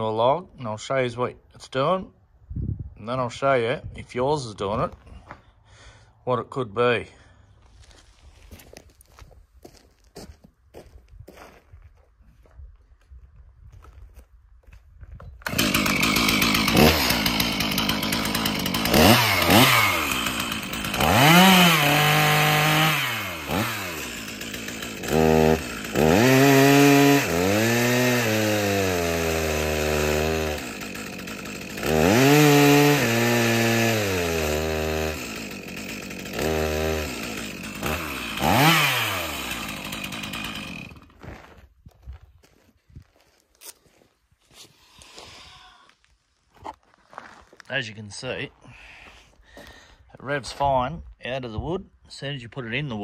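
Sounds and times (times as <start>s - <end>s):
chainsaw revving: 15.4s - 41.2s
chainsaw cutting into log: 15.4s - 41.5s.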